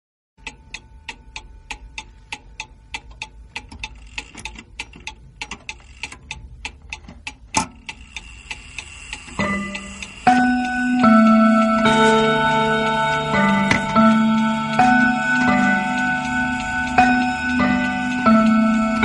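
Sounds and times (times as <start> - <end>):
wall clock ticking: 0.4 - 19.0
loud clock clunk: 9.3 - 19.0.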